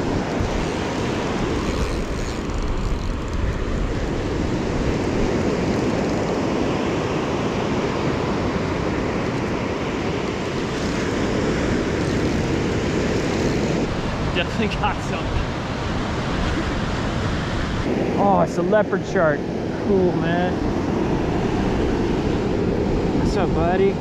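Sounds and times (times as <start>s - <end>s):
ocean surf washing on beach: 0.0s - 24.0s
wind buffeting microphone: 0.0s - 24.0s.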